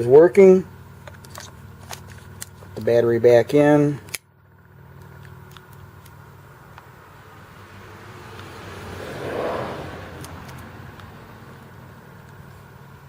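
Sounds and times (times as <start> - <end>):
low steady hum: 0.0 - 9.1, 9.7 - 13.0
vehicle passing: 6.8 - 13.0.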